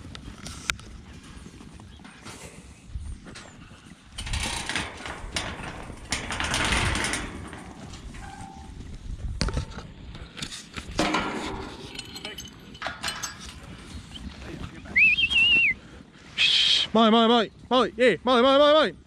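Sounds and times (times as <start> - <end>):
metal gates rattling and clanking: 3.3 - 14.1.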